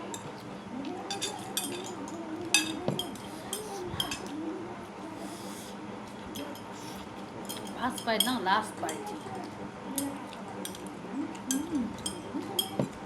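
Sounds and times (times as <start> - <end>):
tableware clinking: 1.0 - 4.3, 7.4 - 9.1, 11.5 - 12.9.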